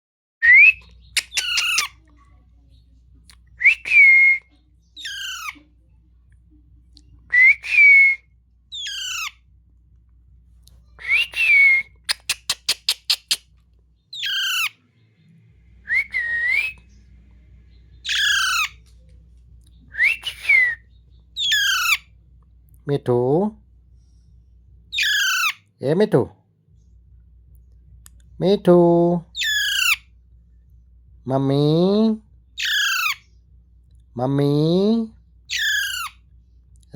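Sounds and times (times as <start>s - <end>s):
parrot whistle call: 0.4s - 1.9s, 5.0s - 5.6s, 7.3s - 9.3s, 11.0s - 12.4s, 14.2s - 14.7s, 15.9s - 16.8s, 18.0s - 18.8s, 19.9s - 20.8s, 21.4s - 22.0s, 24.9s - 25.6s, 29.4s - 30.0s, 32.6s - 33.2s, 35.5s - 36.2s
parrot harsh call: 1.2s - 2.0s, 5.0s - 5.6s, 8.7s - 9.4s, 14.2s - 14.8s, 18.0s - 18.8s, 21.4s - 22.1s, 24.9s - 25.6s, 29.4s - 30.0s, 32.6s - 33.2s, 35.5s - 36.2s.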